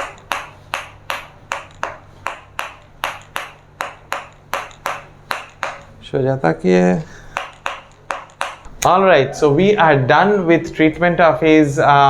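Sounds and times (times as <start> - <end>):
sharp regular ticking: 0.0 - 6.2, 7.2 - 9.0.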